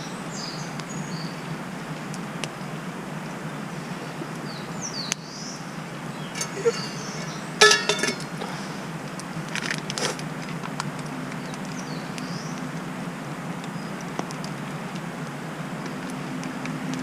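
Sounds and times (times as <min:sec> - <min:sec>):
bird chirping: 0:00.0 - 0:01.6, 0:03.7 - 0:08.8, 0:11.3 - 0:12.7
metallic clinks ringing: 0:07.6 - 0:08.4.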